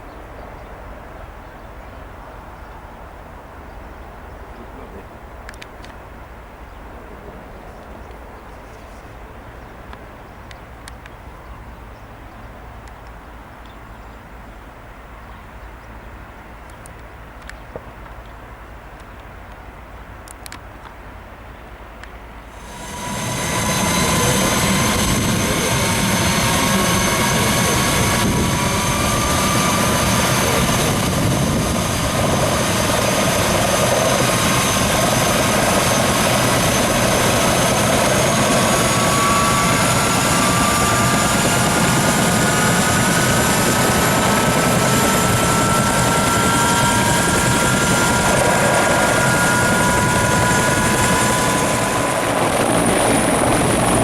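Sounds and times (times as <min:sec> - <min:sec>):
helicopter engine and rotor: 0:22.5 - 0:54.0
rising whining tones: 0:22.5 - 0:54.0.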